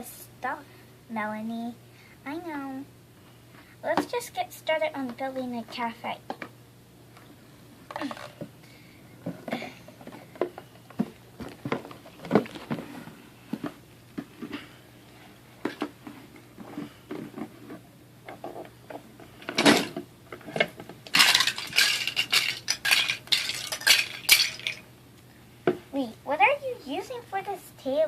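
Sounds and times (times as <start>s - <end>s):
plastic toy blocks clicking: 21.1s - 24.8s.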